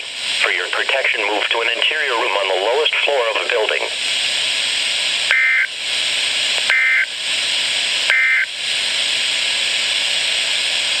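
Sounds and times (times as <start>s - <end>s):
radio static hiss: 0.0s - 11.0s
two-tone data bursts: 5.3s - 5.7s, 6.7s - 7.1s, 8.1s - 8.5s.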